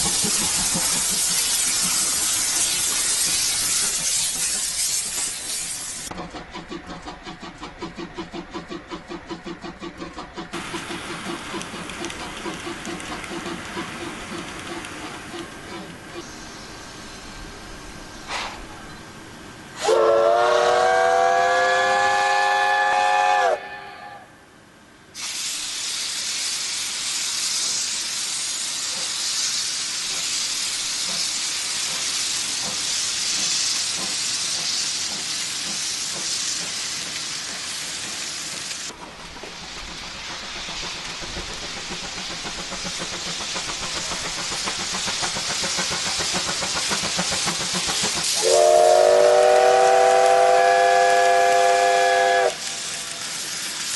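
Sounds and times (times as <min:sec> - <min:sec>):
steam hissing: 0:00.0 - 0:18.8, 0:25.2 - 0:53.9
steam locomotive whistle: 0:19.8 - 0:24.4, 0:48.4 - 0:52.7.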